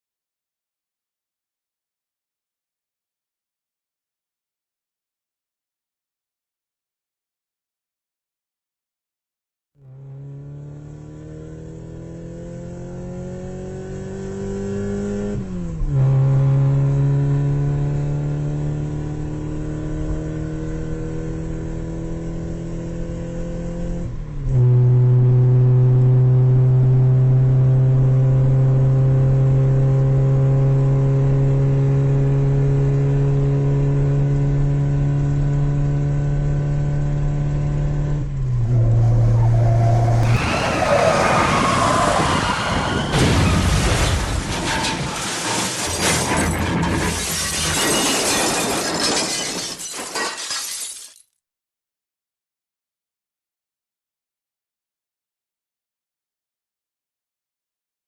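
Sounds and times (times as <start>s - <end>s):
loud burst of noise: 40.2s - 45.8s.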